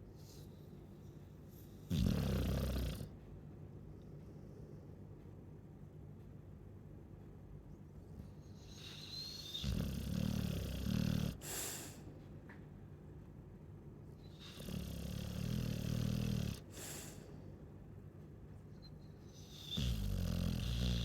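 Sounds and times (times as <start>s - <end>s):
dog snoring: 1.8s - 3.2s, 8.6s - 12.0s, 14.3s - 17.2s, 19.3s - 21.0s.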